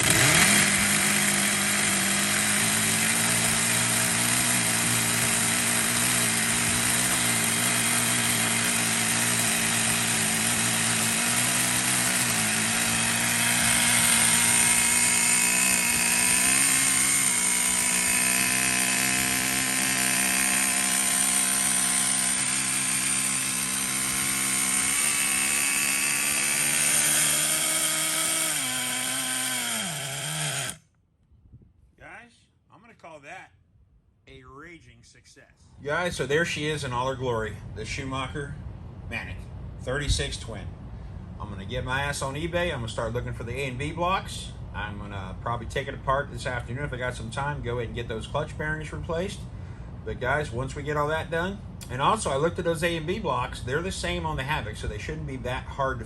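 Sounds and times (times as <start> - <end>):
model car engines running: 0.0 - 30.8.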